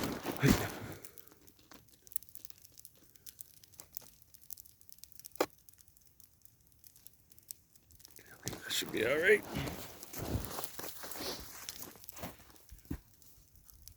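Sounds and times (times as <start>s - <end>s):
crumpling handling noise on microphone: 0.0s - 4.2s, 8.1s - 13.9s.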